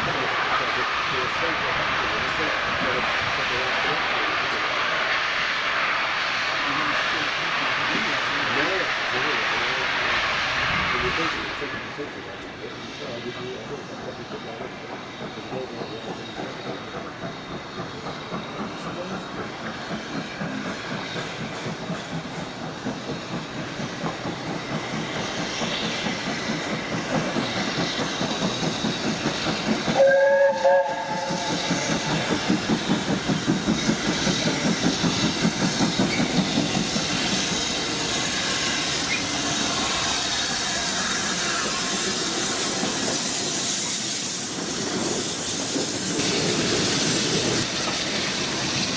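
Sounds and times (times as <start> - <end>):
passing train noise: 0.0 - 48.9
steam locomotive exhaust beats: 0.0 - 48.9
steam whistle blast: 30.0 - 31.7.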